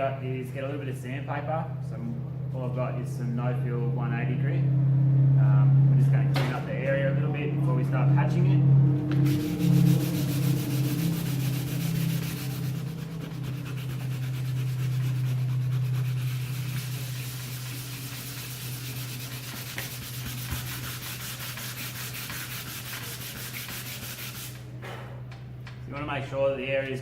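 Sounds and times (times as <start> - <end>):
steady low hum: 0.0 - 27.0
sandpaper rubbing on wall: 9.1 - 24.7.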